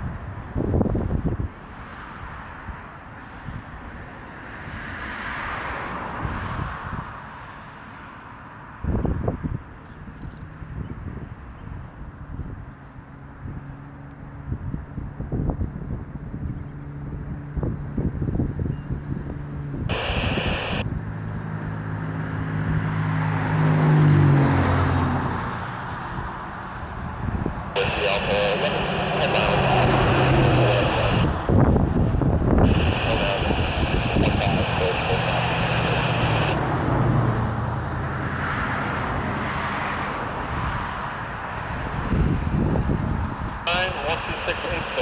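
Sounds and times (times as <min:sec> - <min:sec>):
outdoor background noise: 0:00.0 - 0:45.0
engine running: 0:19.9 - 0:20.8, 0:27.7 - 0:31.3, 0:32.6 - 0:37.2
radio static burst: 0:19.9 - 0:20.8, 0:27.8 - 0:31.4, 0:32.6 - 0:36.8, 0:43.7 - 0:45.0
vehicle engine passing: 0:27.8 - 0:31.5.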